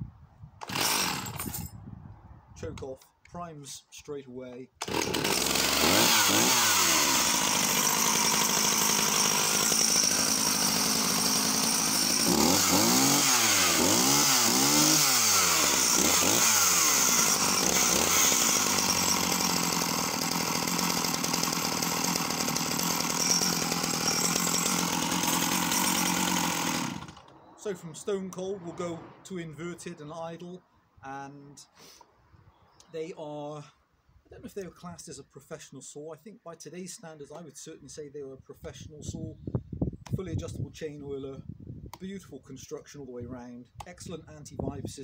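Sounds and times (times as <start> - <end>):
chainsaw revving: 0.6 - 1.6, 4.8 - 27.3.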